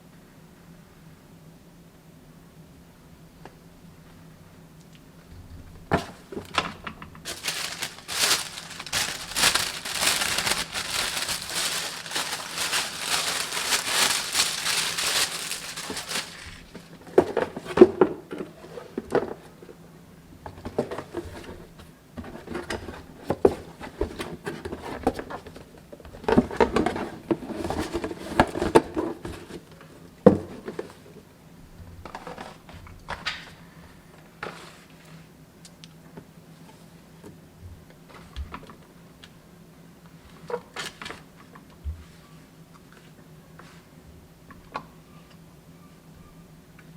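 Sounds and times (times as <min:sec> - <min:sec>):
packaging crinkling and rustling: 0:07.3 - 0:17.3.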